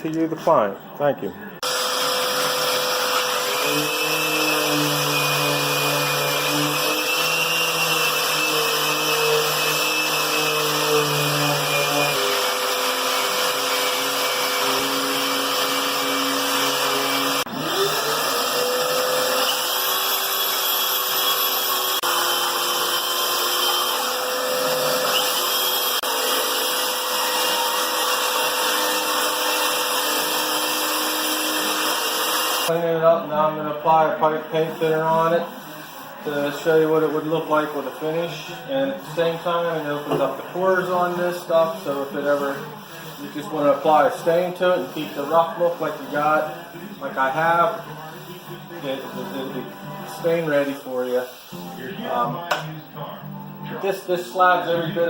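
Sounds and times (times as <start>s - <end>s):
electric power tool running: 1.6s - 32.7s.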